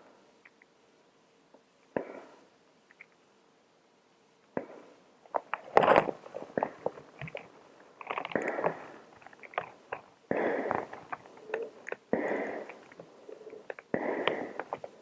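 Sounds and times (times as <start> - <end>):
person breathing: 2.0 - 2.5, 8.3 - 9.3, 10.3 - 15.0
small clicks and rustles: 2.8 - 3.2, 5.2 - 15.0.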